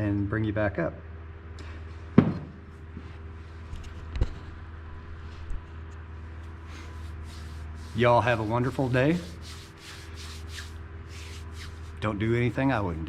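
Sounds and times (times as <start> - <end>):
steady low hum: 0.0 - 13.0
sharp knocks: 2.2 - 2.6.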